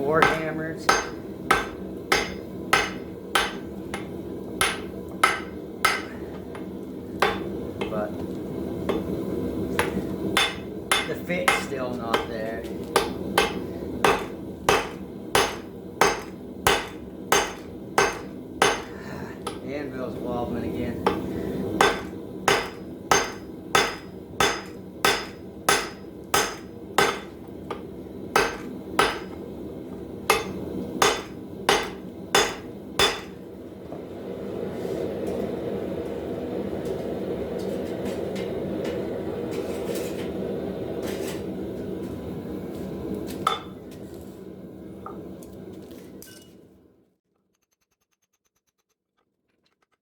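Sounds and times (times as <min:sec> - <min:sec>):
hammer striking steel on anvil: 0:00.0 - 0:08.1, 0:08.9 - 0:09.1, 0:09.8 - 0:19.6, 0:21.0 - 0:29.4, 0:30.3 - 0:33.4, 0:43.5 - 0:43.8.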